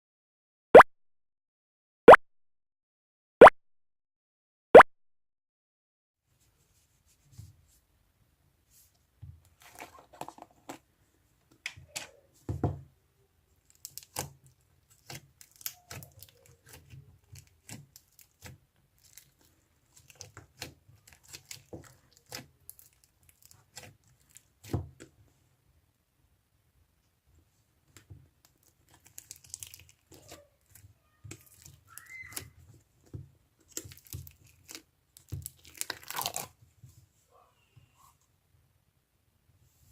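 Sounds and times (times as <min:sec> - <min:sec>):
slime squished by hand: 0:13.6 - 0:25.0, 0:28.5 - 0:32.6, 0:33.6 - 0:36.6.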